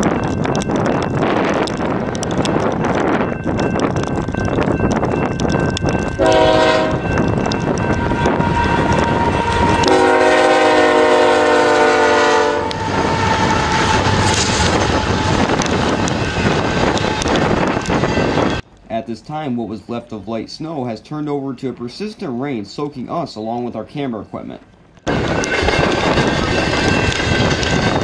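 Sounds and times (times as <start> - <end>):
train rumbling and clattering on rails: 0.0 - 19.0, 24.6 - 28.0
train air horn blasts: 6.2 - 7.2, 7.8 - 18.3.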